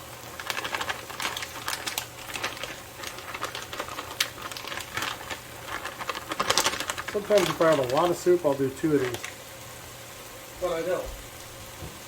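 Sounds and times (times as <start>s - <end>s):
food frying in a pan: 0.0s - 12.0s
utensil clicking and scraping: 0.3s - 8.2s, 9.0s - 9.4s.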